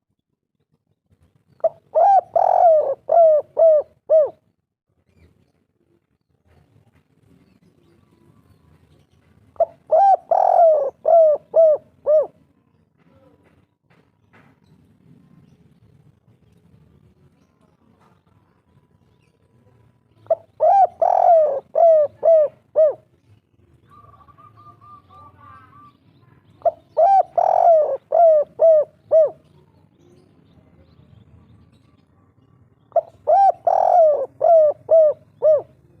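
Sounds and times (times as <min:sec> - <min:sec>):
bird trilling: 0:01.6 - 0:04.4, 0:09.6 - 0:12.4, 0:20.3 - 0:23.0, 0:23.9 - 0:26.0, 0:26.6 - 0:29.4, 0:32.9 - 0:35.8
dove cooing: 0:01.6 - 0:04.4, 0:09.6 - 0:12.4, 0:20.2 - 0:23.1, 0:23.8 - 0:25.9, 0:26.6 - 0:29.6, 0:32.9 - 0:36.0.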